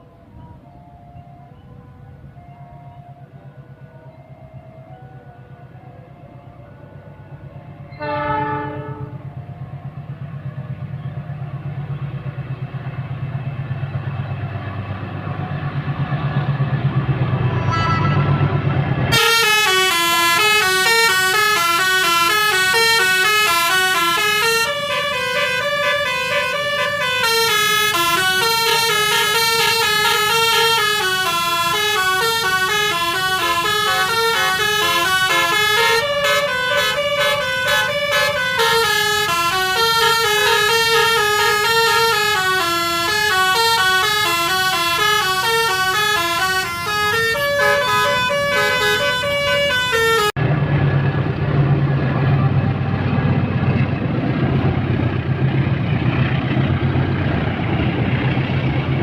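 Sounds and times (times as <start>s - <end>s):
multi-tone horn playing a tune: 7.9s - 9.3s, 17.6s - 18.5s, 19.1s - 50.4s.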